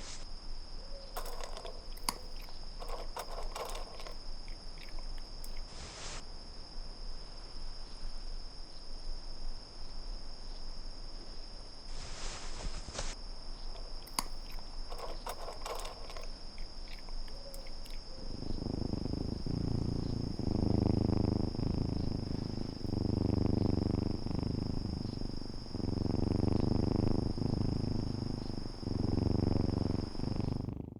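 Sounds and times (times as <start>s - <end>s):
faint clicks: 1.2s - 5.7s, 13.8s - 30.7s
cat purring: 1.2s - 6.2s, 13.8s - 30.9s.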